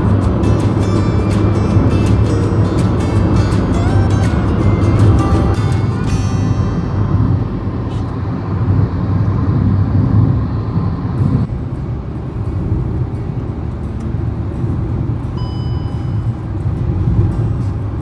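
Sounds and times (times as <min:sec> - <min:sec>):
road and engine rumble in car: 0:00.0 - 0:18.0
faint beep: 0:15.4 - 0:16.4.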